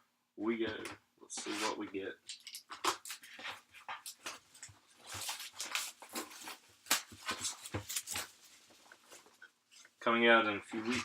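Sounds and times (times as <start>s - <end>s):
plastic wrapping crinkling and ripping: 2.3s - 9.4s.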